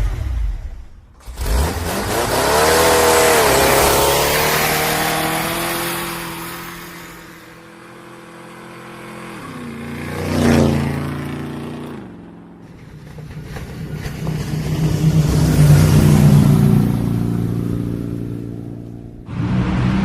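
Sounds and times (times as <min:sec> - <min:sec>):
vehicle engine running loud: 0:01.2 - 0:20.0.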